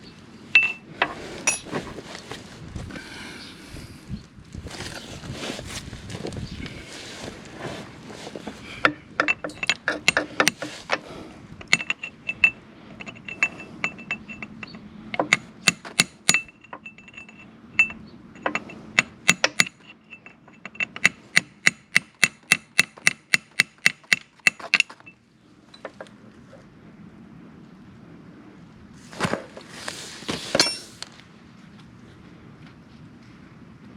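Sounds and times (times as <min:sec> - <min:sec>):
metallic clicks of hand tools: 0:08.8 - 0:11.0, 0:11.6 - 0:25.1.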